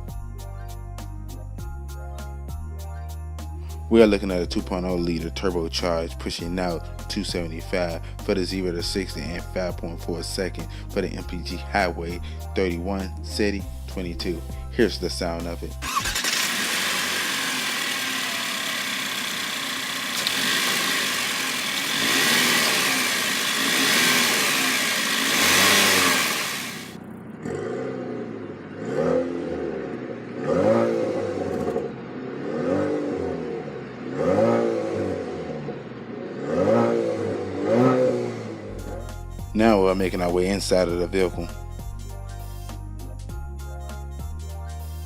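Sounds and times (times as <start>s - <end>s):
car engine revving: 15.8s - 39.0s.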